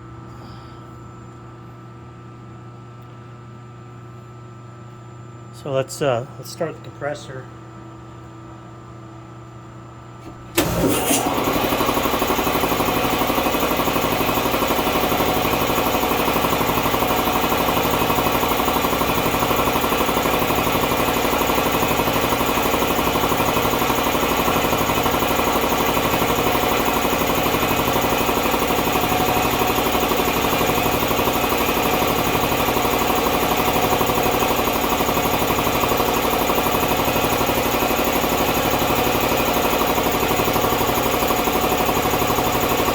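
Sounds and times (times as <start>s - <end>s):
air compressor running loudly: 10.5s - 42.9s.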